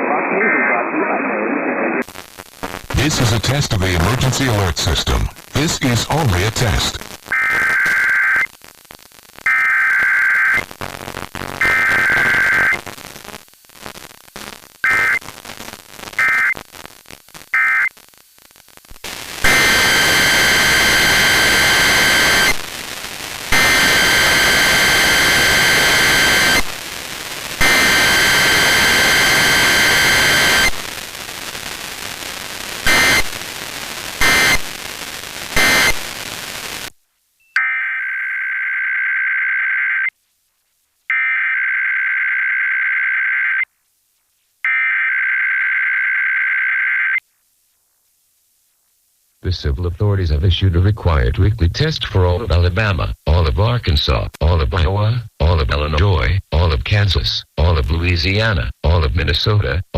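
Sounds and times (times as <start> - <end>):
harsh static-like buzz: 0.0 - 41.1
screechy digital data bursts: 9.5 - 12.9.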